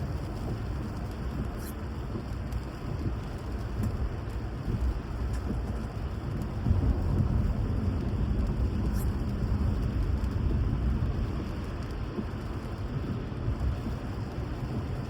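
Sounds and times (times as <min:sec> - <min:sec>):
steady rain: 0:00.0 - 0:15.0
low rumble: 0:04.6 - 0:15.0.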